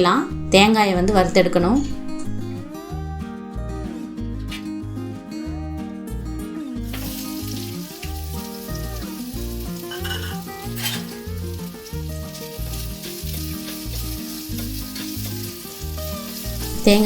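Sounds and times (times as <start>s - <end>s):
background music with a beat: 2.3s - 16.8s
coconut sizzling in a pan: 6.8s - 17.0s.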